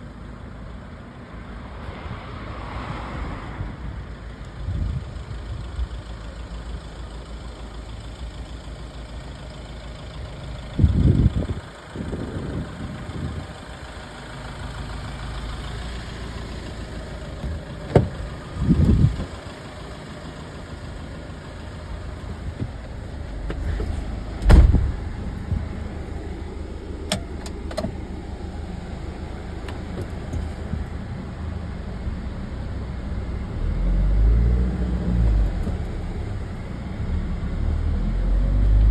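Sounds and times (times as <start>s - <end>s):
diesel engine idling: 3.8s - 38.9s
loud thumps and knocks: 23.5s - 25.7s.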